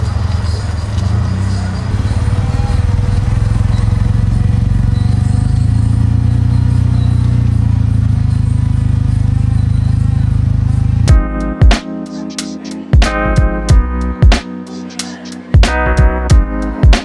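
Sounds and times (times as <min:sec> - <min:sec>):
car engine running: 0:00.0 - 0:11.2.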